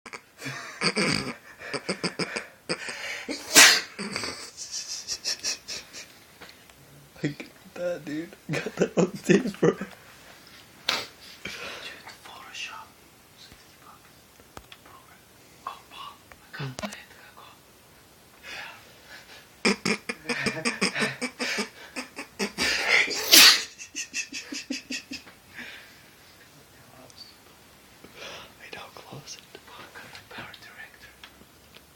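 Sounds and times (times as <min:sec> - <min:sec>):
loud sneeze: 0:03.3 - 0:04.2, 0:10.8 - 0:11.2, 0:22.8 - 0:23.8.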